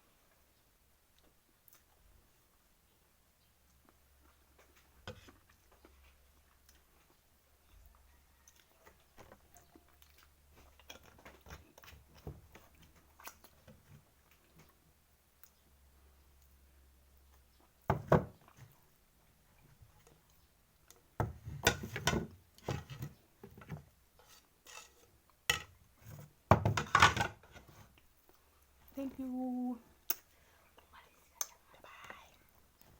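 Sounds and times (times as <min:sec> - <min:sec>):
person chewing: 0:08.4 - 0:13.6.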